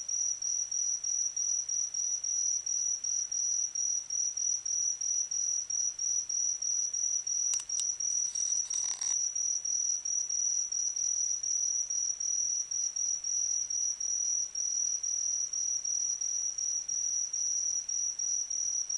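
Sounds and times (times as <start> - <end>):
insect trilling: 7.5 - 9.2
scratchy rustle: 7.6 - 9.2.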